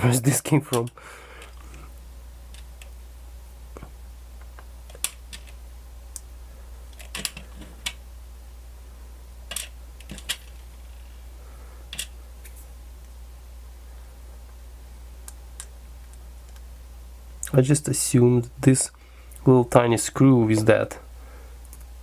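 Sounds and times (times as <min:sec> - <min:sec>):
steady low hum: 0:00.0 - 0:22.0
small plastic parts clicking: 0:04.9 - 0:05.6, 0:06.9 - 0:08.0, 0:09.5 - 0:10.6, 0:11.9 - 0:12.1.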